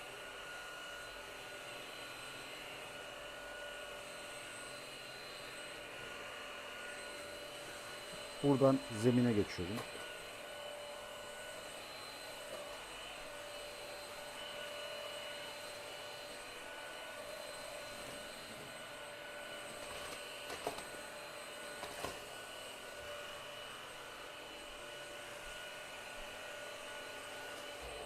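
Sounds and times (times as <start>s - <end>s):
stick vacuum running: 5.4s - 28.0s.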